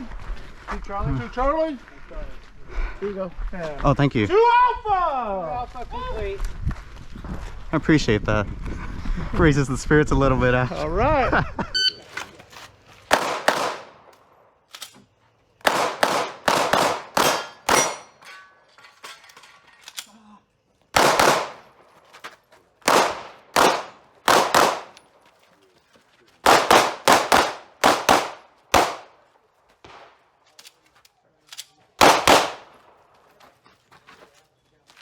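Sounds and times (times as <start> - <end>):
pistol shots: 13.1 - 14.1, 15.6 - 18.1, 21.0 - 21.8, 22.8 - 25.0, 26.4 - 29.2, 29.8 - 30.2, 32.0 - 32.9.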